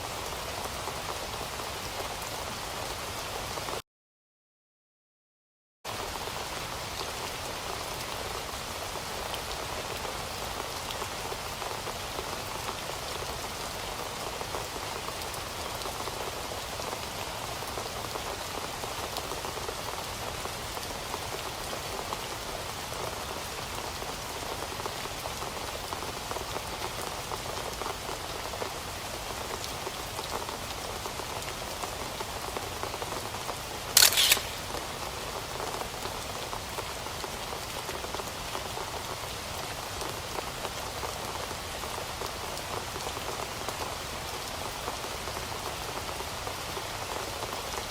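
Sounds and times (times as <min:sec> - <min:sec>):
steady rain falling: 0:00.0 - 0:03.8, 0:05.9 - 0:47.9
sharp double click: 0:34.0 - 0:34.6.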